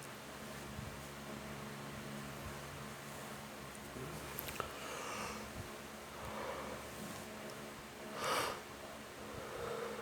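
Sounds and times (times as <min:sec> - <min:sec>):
man breathing noisily through nose: 0:04.6 - 0:07.1, 0:08.1 - 0:10.0.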